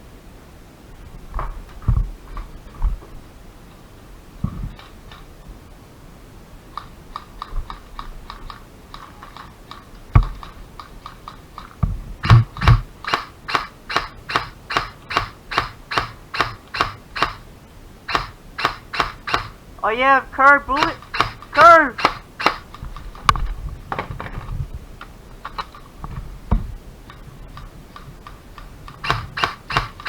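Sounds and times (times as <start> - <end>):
dull handling thumps: 10.1 - 17.5, 20.7 - 24.7, 25.5 - 30.0
airsoft guns firing: 12.2 - 17.5, 18.1 - 23.2, 27.6 - 30.0.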